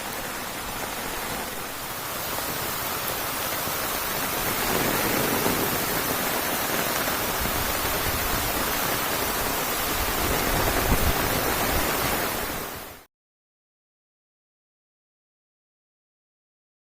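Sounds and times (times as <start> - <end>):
heavy rain falling: 0.0 - 13.0.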